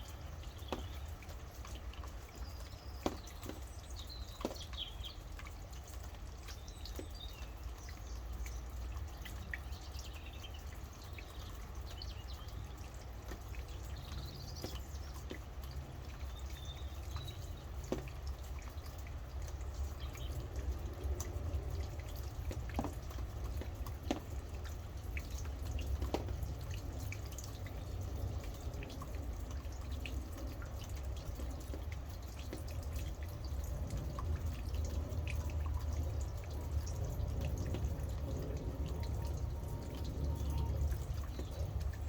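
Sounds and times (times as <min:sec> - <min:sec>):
rain falling: 0:00.0 - 0:42.0
water drops dripping: 0:00.0 - 0:42.0
steady low rumble: 0:32.8 - 0:42.0.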